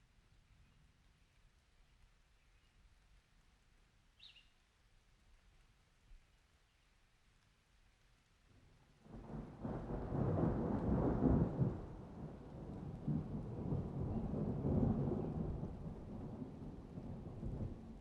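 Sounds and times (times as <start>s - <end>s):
thunder rumbling: 9.0s - 18.0s.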